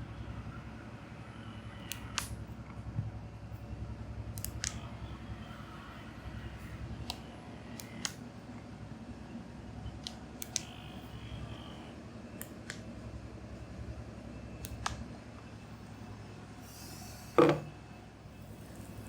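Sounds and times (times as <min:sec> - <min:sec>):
steady low hum: 0:00.0 - 0:19.0
short sharp clicks and snaps: 0:07.8 - 0:08.2, 0:10.0 - 0:10.8.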